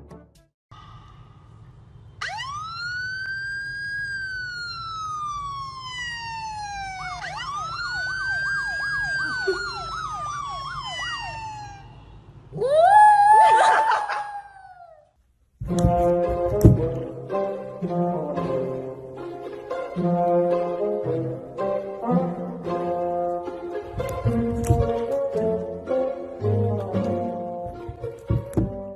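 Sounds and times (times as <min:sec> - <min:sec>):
siren wailing: 0:02.2 - 0:15.1.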